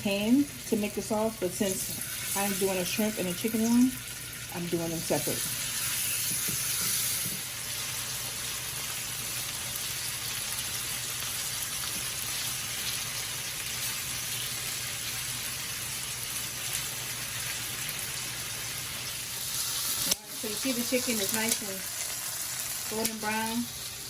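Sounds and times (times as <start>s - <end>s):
chicken sizzling in a pan: 0.0s - 24.0s.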